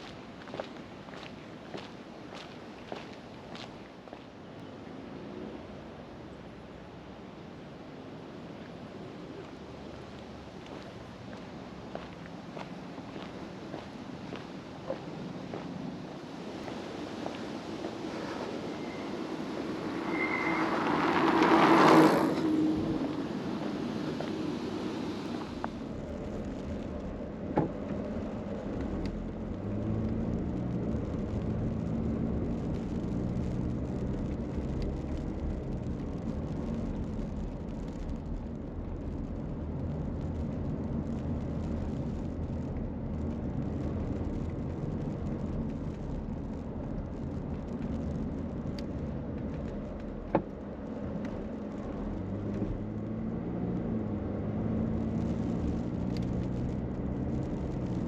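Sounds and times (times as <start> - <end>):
road noise rumble: 0.0 - 58.0
car engine hum: 16.8 - 58.0.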